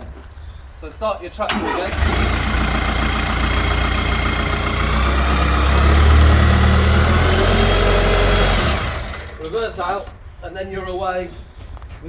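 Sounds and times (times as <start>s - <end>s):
tractor diesel engine running: 1.5s - 10.1s.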